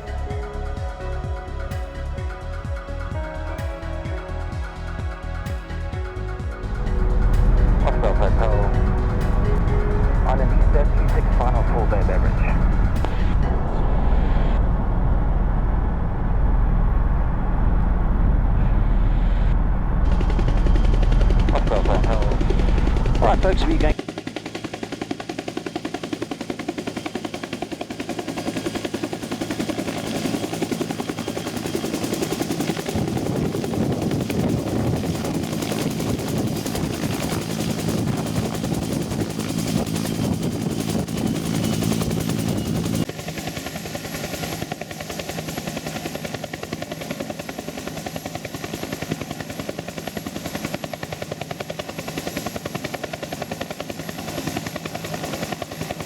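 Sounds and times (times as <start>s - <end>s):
helicopter rotor beating: 0.0s - 56.0s.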